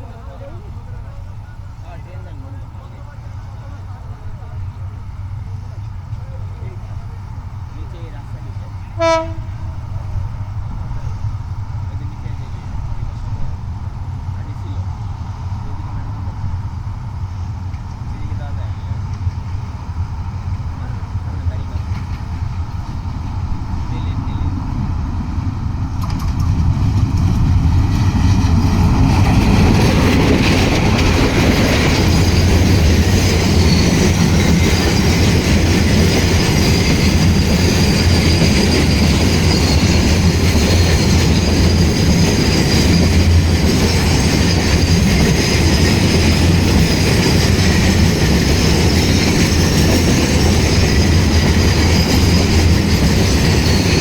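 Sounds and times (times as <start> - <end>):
train wheels clattering on track: 0.0 - 54.0
high wheel squeal: 28.6 - 54.0.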